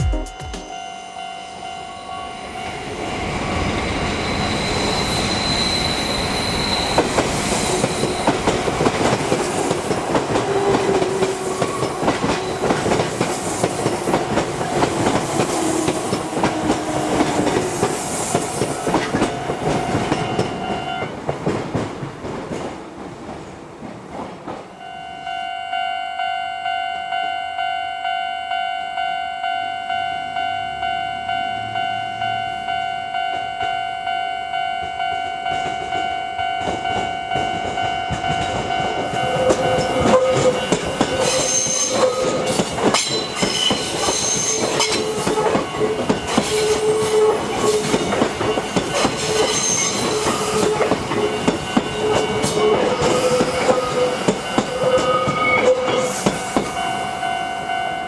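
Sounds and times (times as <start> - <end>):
level crossing bell ringing: 0.0 - 3.0, 24.8 - 40.4
wheels squealing: 3.1 - 8.7
train wheels clattering: 6.1 - 24.7, 34.8 - 56.9.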